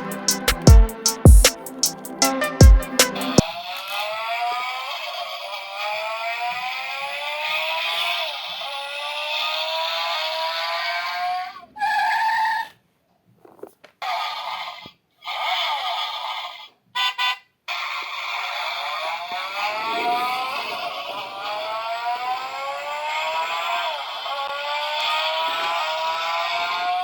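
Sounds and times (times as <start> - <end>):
toy car motor whine: 3.4 - 12.1, 14.0 - 27.0.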